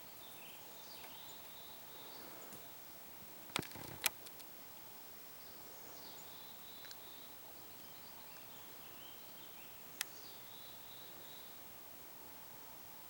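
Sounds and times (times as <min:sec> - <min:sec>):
sharp clicks: 0:03.5 - 0:04.5.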